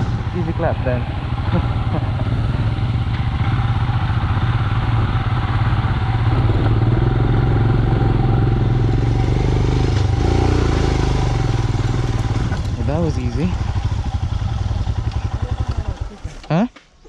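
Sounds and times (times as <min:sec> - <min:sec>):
motorcycle engine running: 0:00.0 - 0:16.6.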